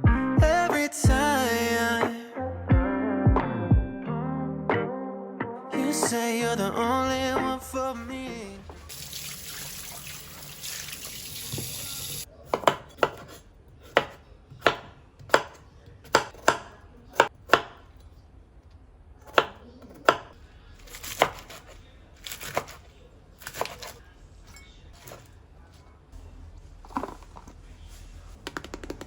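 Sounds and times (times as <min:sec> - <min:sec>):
tap water running: 0:08.8 - 0:12.3
knife chopping on cutting board: 0:12.5 - 0:17.8, 0:20.9 - 0:22.8.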